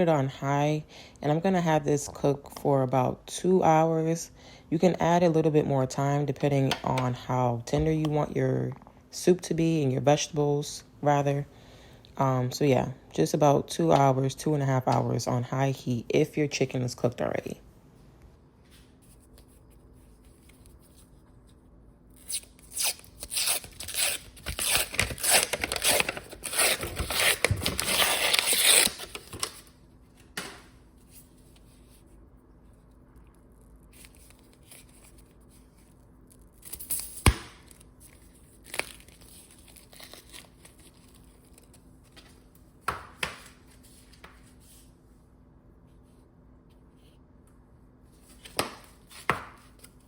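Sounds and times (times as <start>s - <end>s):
packaging tearing and crinkling: 22.2s - 29.7s, 37.6s - 41.8s.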